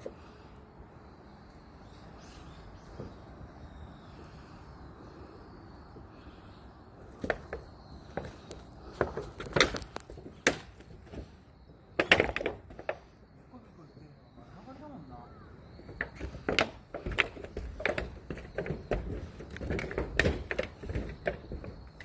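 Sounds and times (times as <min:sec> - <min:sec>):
wood cracking and snapping: 0:08.5 - 0:10.9, 0:12.0 - 0:13.0, 0:16.0 - 0:22.0.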